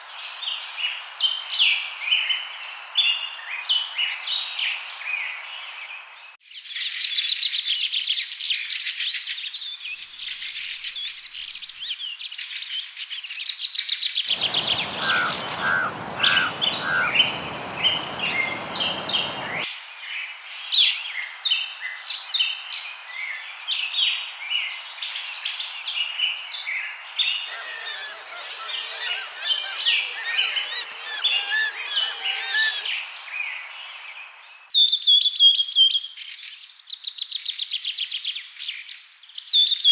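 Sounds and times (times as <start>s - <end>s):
songbird singing: 14.3s - 19.7s, 24.6s - 36.4s
steady background hiss: 14.3s - 34.7s.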